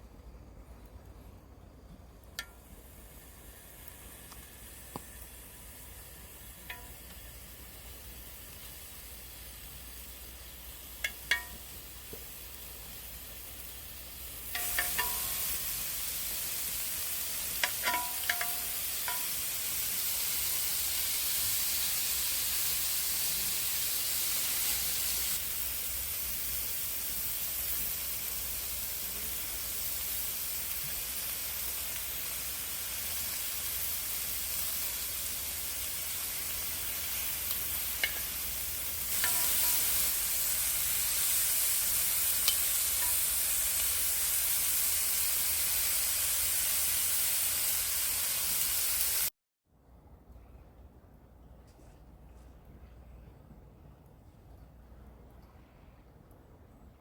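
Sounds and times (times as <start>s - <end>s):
food sizzling in a pan: 2.4s - 49.3s
utensil clinking on pan: 11.0s - 11.6s, 14.5s - 15.7s, 17.6s - 19.6s, 38.0s - 38.4s, 39.1s - 40.1s.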